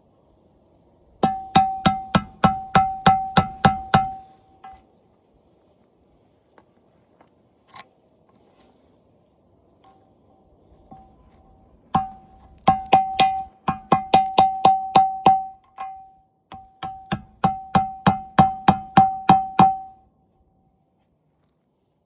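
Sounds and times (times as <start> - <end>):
rapid ringing knocks: 1.2 - 4.8, 10.9 - 11.2, 12.0 - 20.0.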